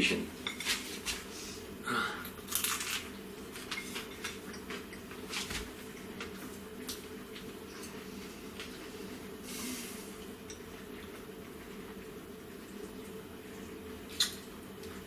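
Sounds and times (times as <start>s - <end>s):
steady low hum: 0.0s - 15.0s
person chewing food: 10.1s - 15.0s.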